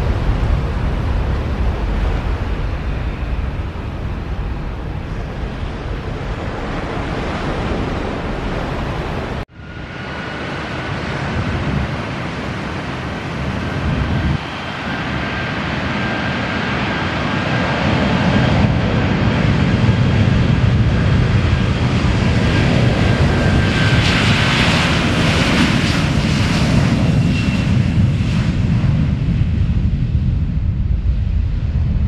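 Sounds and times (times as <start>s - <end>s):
deep rumble: 0.0s - 9.5s, 17.8s - 32.0s
jet engines rushing: 0.0s - 32.0s
wind buffeting microphone: 0.0s - 32.0s.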